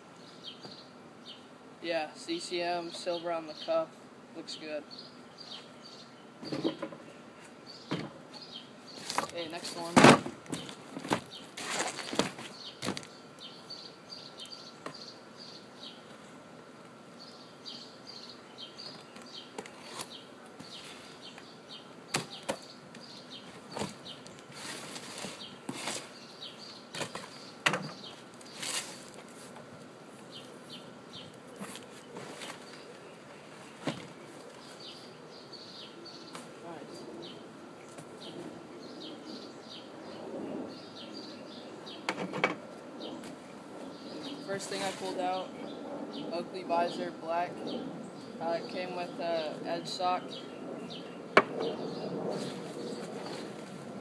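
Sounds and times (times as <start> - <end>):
packaging rustling and crinkling: 10.5 - 13.1.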